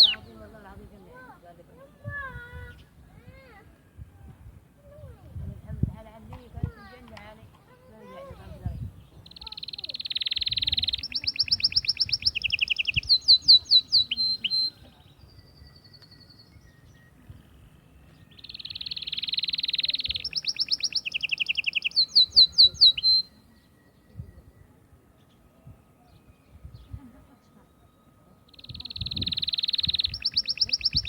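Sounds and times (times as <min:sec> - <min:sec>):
canary singing: 0:00.0 - 0:01.7, 0:07.9 - 0:24.0, 0:28.4 - 0:31.0.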